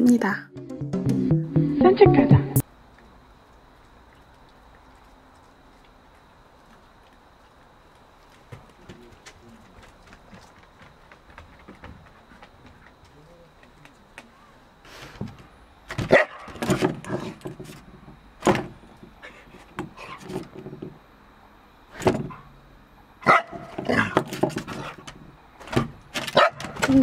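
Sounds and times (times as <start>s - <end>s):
dog barking: 16.1s - 16.6s, 23.2s - 24.1s, 26.3s - 26.8s.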